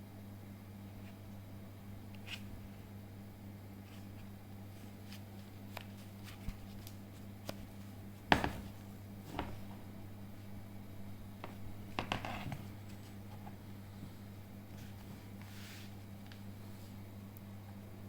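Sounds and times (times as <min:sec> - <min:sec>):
low electrical hum: 0:00.0 - 0:18.0.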